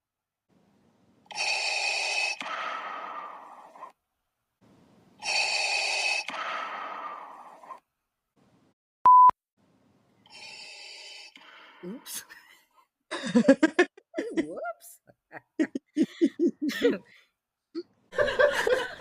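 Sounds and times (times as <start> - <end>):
mechanical respirator breathing: 1.3 - 4.0, 5.2 - 7.8, 10.2 - 12.2.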